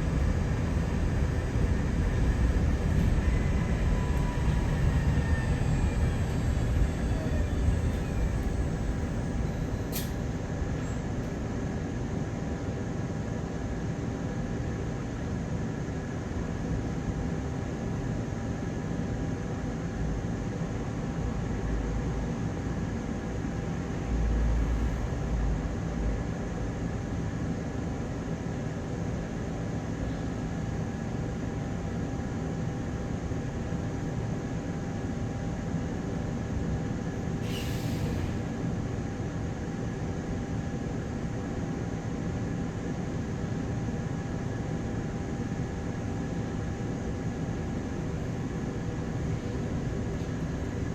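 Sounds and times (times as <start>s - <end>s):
constant whine: 0.0s - 11.6s
heavy low rumble: 0.0s - 11.6s
bus engine drone: 0.0s - 15.2s, 18.9s - 50.9s.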